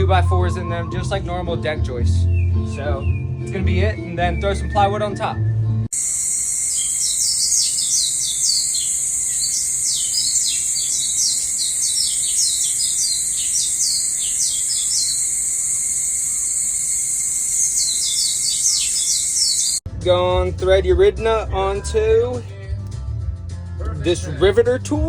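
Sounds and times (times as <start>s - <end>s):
birds chirping: 2.2s - 5.6s, 6.2s - 19.8s
high-pitched insect drone: 5.9s - 19.8s.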